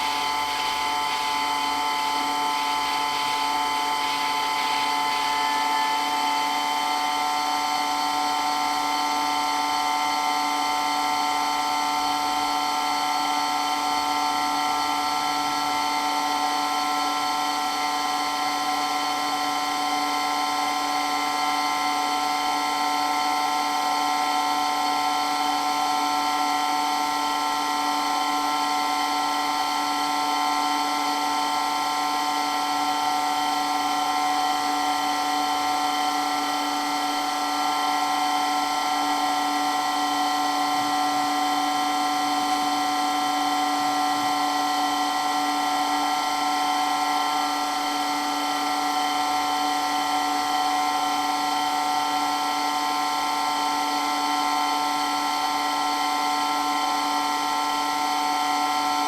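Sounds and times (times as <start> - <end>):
water pump whining: 0.0 - 9.8.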